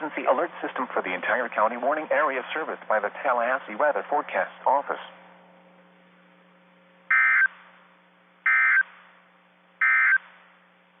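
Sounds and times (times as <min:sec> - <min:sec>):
faint radio hum: 0:00.0 - 0:11.0
short digital data bursts: 0:07.1 - 0:07.6, 0:08.5 - 0:08.9, 0:09.8 - 0:10.4.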